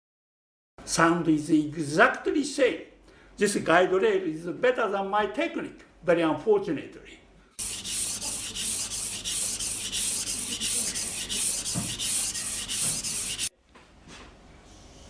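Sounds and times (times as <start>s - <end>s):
knife stroking on water stone: 7.6s - 13.5s.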